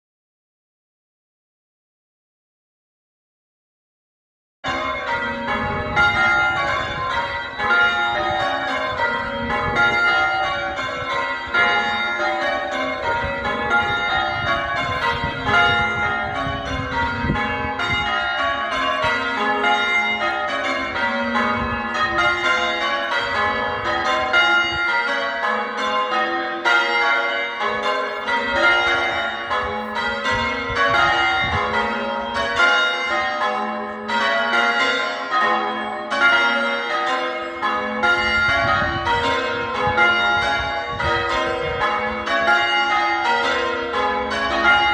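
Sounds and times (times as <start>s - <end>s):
church bells ringing: 4.6s - 44.9s.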